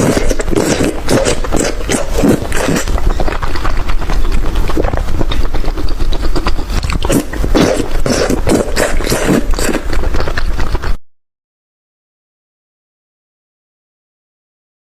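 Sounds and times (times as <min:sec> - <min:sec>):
loud chewing and crunching: 0:00.0 - 0:11.0.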